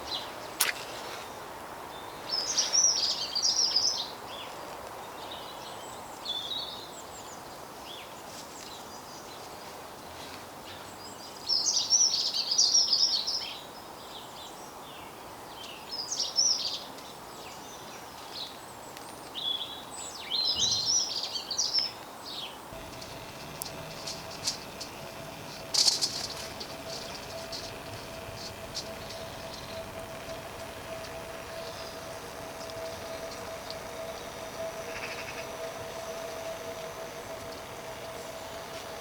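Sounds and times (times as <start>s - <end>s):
outdoor background hiss: 0.0s - 39.0s
songbird twittering: 22.8s - 39.0s.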